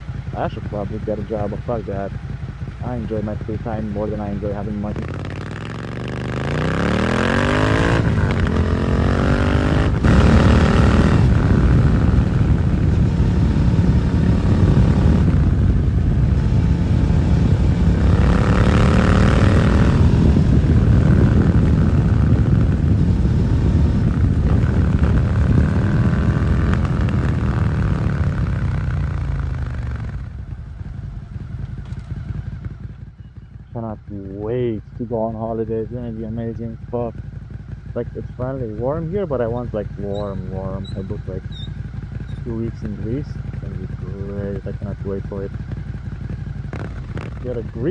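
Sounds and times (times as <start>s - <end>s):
motorcycle engine accelerating: 0.0s - 47.9s
wind noise: 2.8s - 30.6s.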